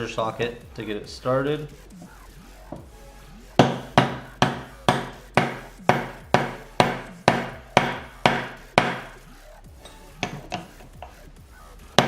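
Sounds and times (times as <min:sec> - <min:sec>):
hammer striking metal: 0:03.6 - 0:09.1, 0:09.8 - 0:11.1.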